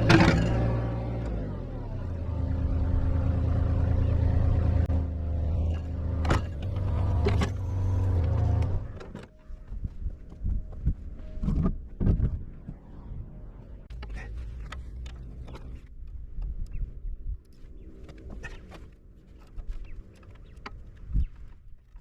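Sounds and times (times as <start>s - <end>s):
engine running: 0.0s - 9.3s
knocks and clunks: 5.5s - 9.4s.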